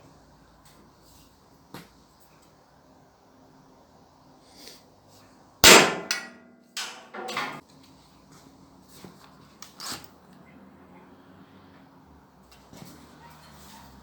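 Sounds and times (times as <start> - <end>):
loud ringing metal clang: 5.6 - 7.6.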